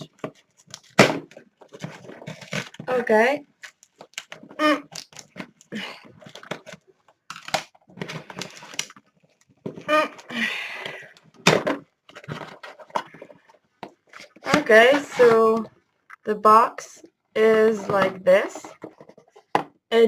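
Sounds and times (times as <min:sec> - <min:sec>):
packaging tearing and crinkling: 0:03.6 - 0:05.6.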